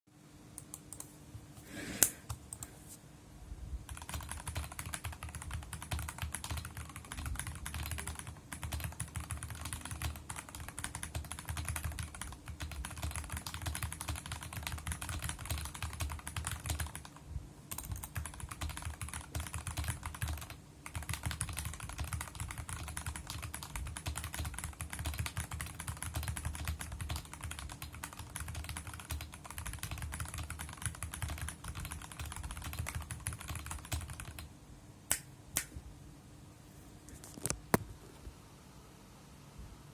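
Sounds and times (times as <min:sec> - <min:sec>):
mechanical keyboard typing: 0:03.9 - 0:34.5.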